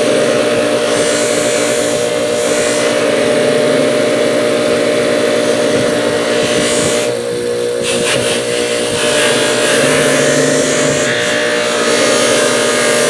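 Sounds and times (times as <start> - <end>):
bench buffer motor hum: 0.0 - 13.0
metal on polishing wheel hissing: 6.3 - 13.0.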